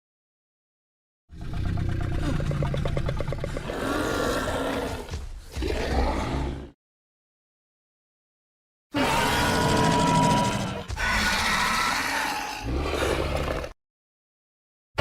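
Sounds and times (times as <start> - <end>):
creature growling and roaring: 1.3 - 6.8, 8.9 - 13.8.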